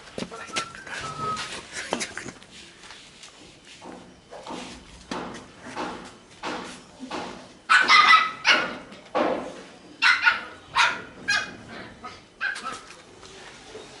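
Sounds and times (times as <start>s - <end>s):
dog barking: 7.7s - 8.8s, 10.0s - 11.6s.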